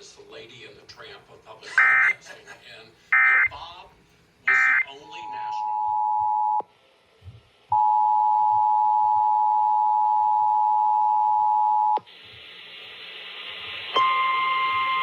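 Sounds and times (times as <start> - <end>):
two-tone alert signal: 1.8 - 2.2, 3.2 - 3.5, 4.5 - 4.9
hiss: 12.1 - 14.0.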